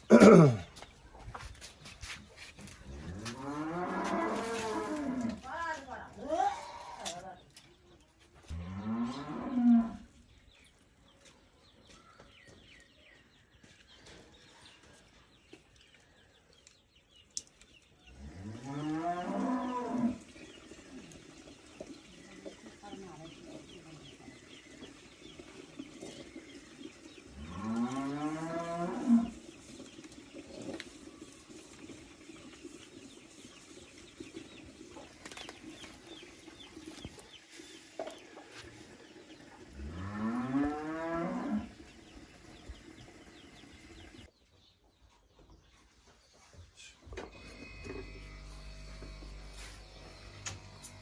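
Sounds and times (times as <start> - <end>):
cow mooing: 3.0 - 5.4, 18.4 - 20.2.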